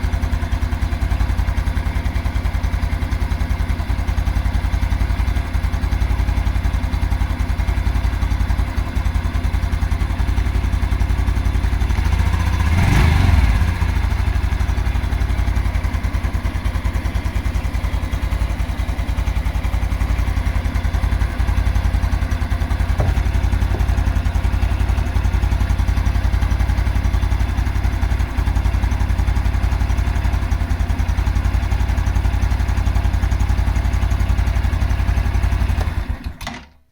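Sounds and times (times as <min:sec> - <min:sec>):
motorcycle engine idling with knock: 0:00.0 - 0:36.9
engine revving: 0:11.9 - 0:14.6.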